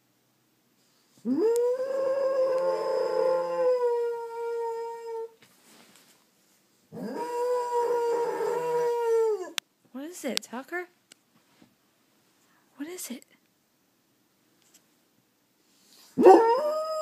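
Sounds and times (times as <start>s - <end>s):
dog howling: 1.2s - 5.4s, 7.0s - 9.6s, 16.2s - 17.0s.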